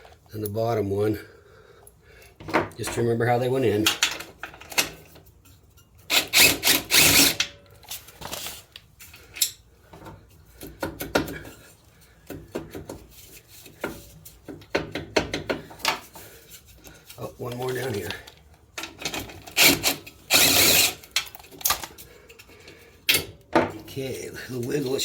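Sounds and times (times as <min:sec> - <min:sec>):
power tool burst: 0:19.6 - 0:21.0.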